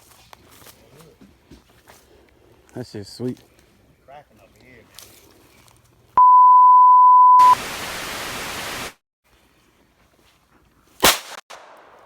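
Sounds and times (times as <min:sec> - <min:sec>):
loud steady beep: 0:06.2 - 0:07.6
static hiss: 0:07.4 - 0:09.0
pistol shot: 0:11.0 - 0:12.0.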